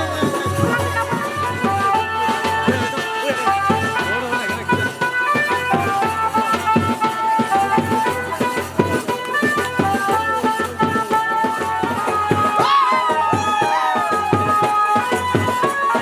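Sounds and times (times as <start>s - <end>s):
held melody line: 4.1s - 16.0s
drum with sliding pitch: 12.6s - 14.8s.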